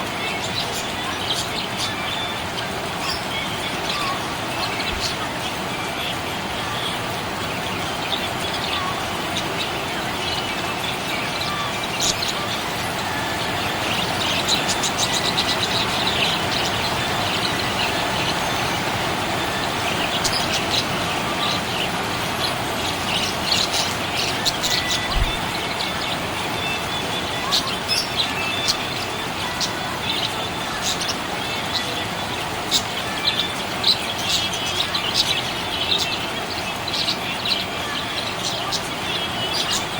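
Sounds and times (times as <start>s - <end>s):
steady background noise: 0.0s - 39.9s
budgerigars chirping: 7.9s - 39.9s.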